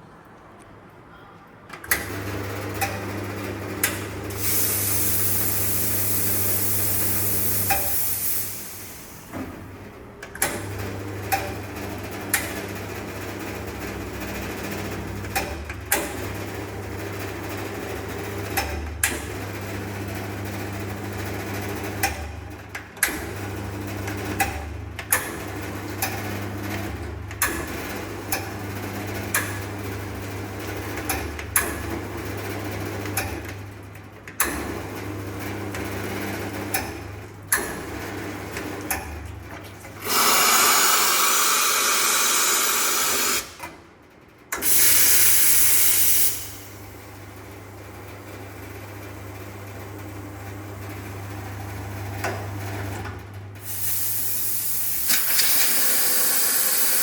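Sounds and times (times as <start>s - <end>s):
coffee machine humming: 2.0s - 22.1s, 34.6s - 43.6s, 44.6s - 57.0s
loud hiss: 4.4s - 9.2s.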